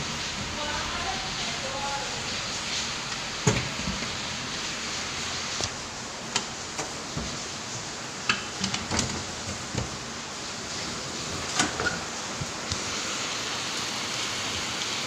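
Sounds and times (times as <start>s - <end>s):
steady rain hiss: 0.0s - 15.0s.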